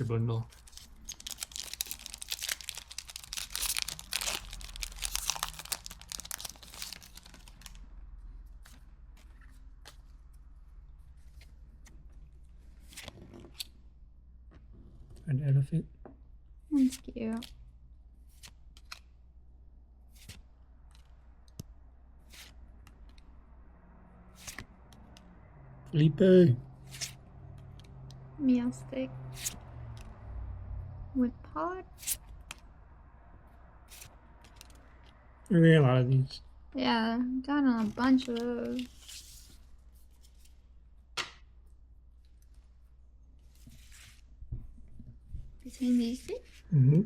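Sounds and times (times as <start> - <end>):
trading cards rustling and swishing: 0.3 - 13.8, 18.2 - 19.2, 20.1 - 23.3, 24.3 - 25.2, 26.8 - 28.2, 29.2 - 30.1, 31.9 - 32.7, 33.8 - 35.2, 37.7 - 40.7, 43.4 - 44.4
foil wrapper tearing and crinkling: 0.6 - 7.8.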